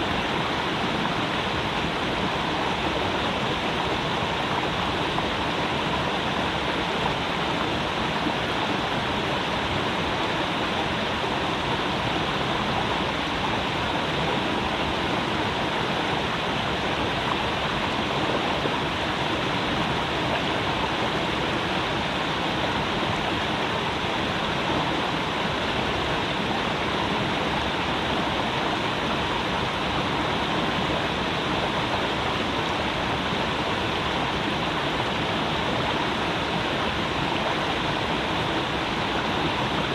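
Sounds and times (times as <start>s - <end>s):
creek water running over rocks: 0.0s - 39.9s.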